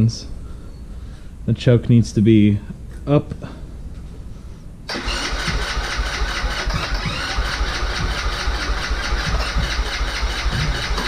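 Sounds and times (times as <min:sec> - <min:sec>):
electric starter cranking engine: 0:04.9 - 0:11.0.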